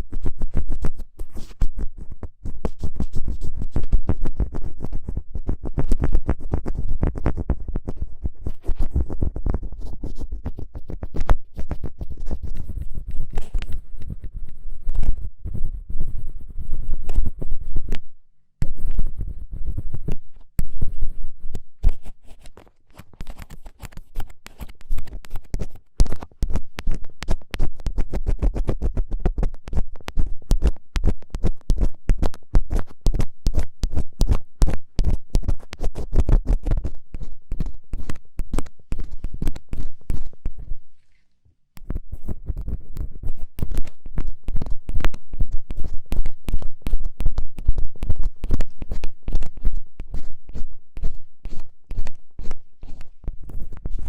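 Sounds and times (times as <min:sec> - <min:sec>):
ear pick scratching microphone: 0:00.0 - 0:54.0.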